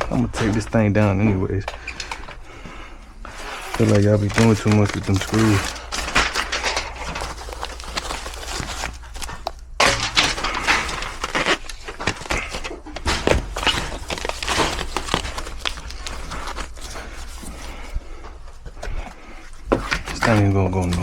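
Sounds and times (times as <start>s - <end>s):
thin sheet metal scraping and rattling: 3.4s - 17.2s.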